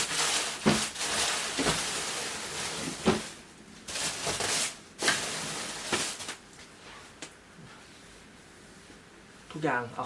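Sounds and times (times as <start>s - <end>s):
household objects rustling and clattering: 0.0s - 7.8s.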